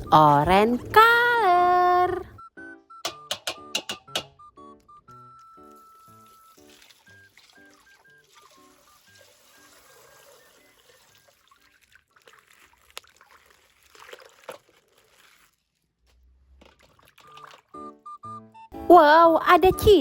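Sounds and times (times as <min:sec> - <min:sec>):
faint background music: 0:00.0 - 0:11.9, 0:17.2 - 0:20.0
water pouring from plastic bag: 0:05.4 - 0:17.8.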